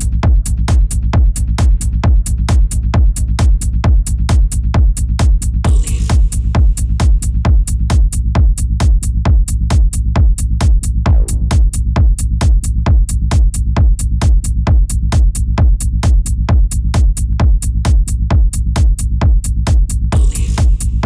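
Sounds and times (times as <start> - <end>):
techno music: 0.0 - 3.7, 20.2 - 21.0
hi-hat ticks: 0.0 - 8.2
kick drum pulsing: 0.0 - 21.0.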